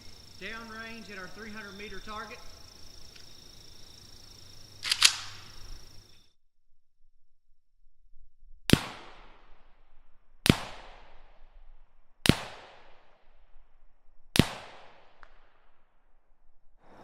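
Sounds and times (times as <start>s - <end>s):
rifle shots with echo: 4.8s - 5.6s, 10.5s - 11.2s, 12.3s - 13.0s, 14.4s - 15.4s.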